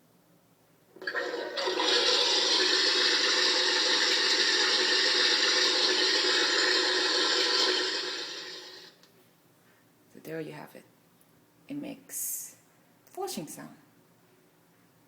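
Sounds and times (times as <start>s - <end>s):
recorded toilet flushing sound: 0.9s - 9.0s.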